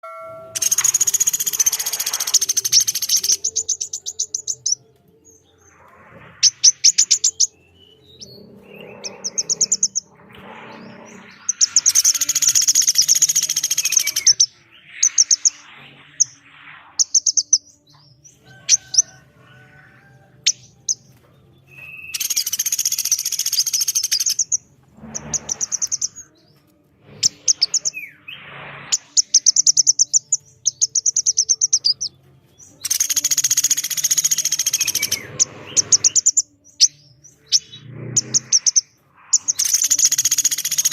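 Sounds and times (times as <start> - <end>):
woodpecker rapid rattling calls: 32.8 - 35.2.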